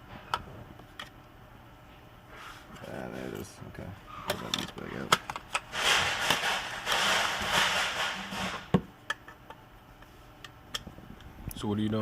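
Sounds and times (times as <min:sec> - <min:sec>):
scraping and rustling: 0:04.2 - 0:08.7.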